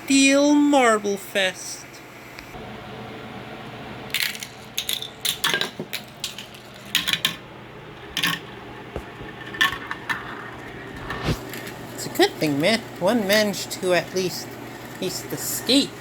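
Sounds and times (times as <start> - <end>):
steel marbles clattering through track: 4.2 - 7.4, 8.2 - 8.5.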